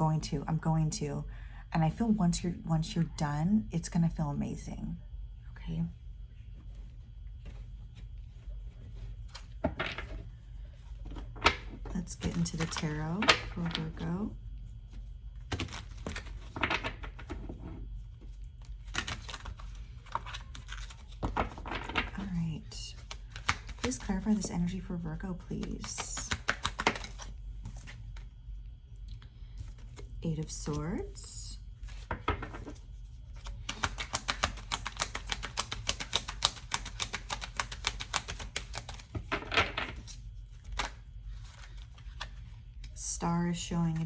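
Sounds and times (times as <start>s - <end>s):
cards being shuffled: 10.9s - 14.3s, 14.9s - 24.8s, 25.4s - 28.3s, 31.8s - 43.0s.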